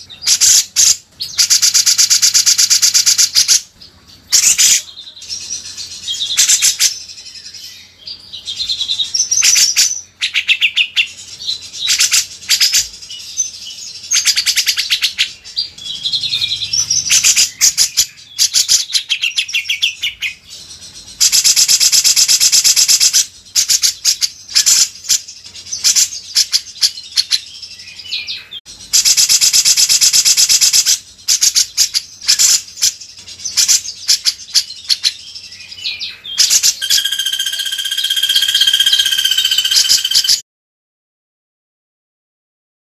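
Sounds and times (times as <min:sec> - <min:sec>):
songbirds singing: 0:00.0 - 0:40.4
loud rattling bird trills: 0:00.2 - 0:03.7, 0:14.1 - 0:27.4, 0:35.9 - 0:40.4.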